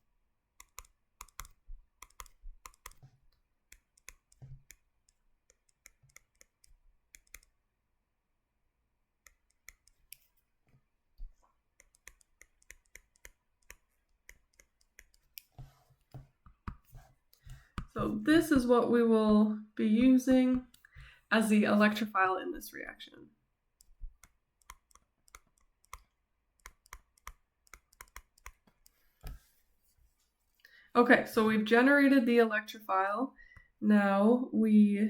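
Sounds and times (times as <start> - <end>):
faint clicking and tapping: 0.6 - 7.6, 9.2 - 18.7, 23.8 - 29.5.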